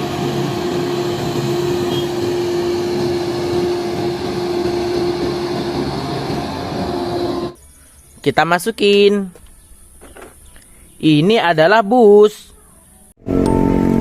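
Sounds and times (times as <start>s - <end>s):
steady mechanical drone: 0.0s - 7.6s.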